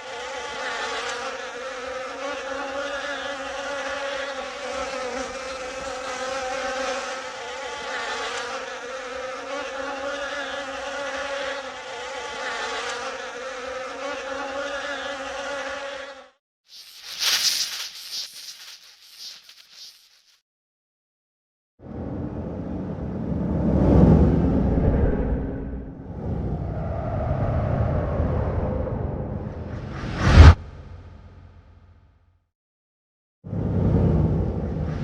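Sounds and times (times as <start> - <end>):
flies buzzing: 0.1 - 20.4.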